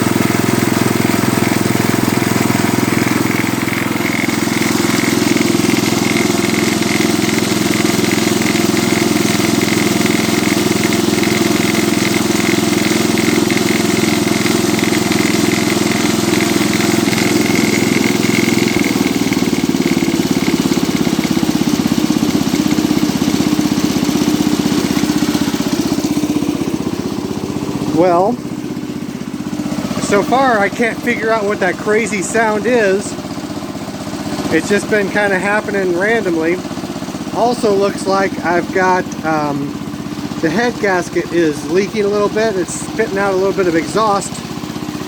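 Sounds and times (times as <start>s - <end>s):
tractor engine running: 0.0s - 45.0s.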